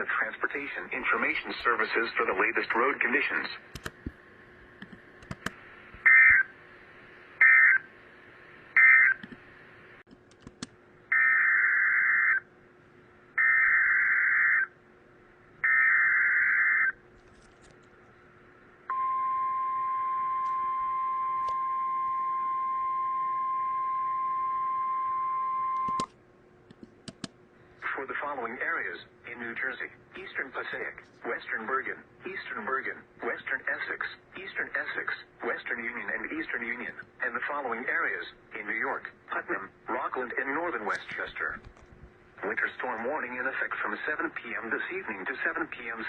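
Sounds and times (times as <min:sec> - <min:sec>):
steady single-pitch alert tone: 0:18.9 - 0:26.1.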